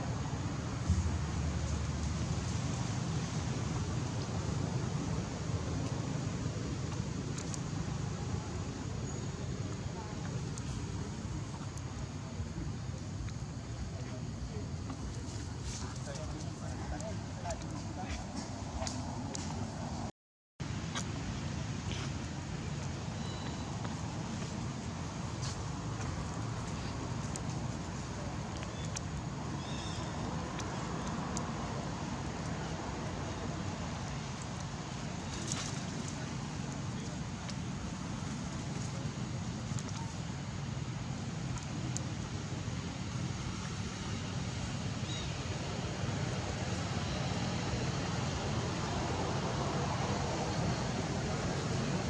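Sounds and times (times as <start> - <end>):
low rumble: 0.0 - 5.7.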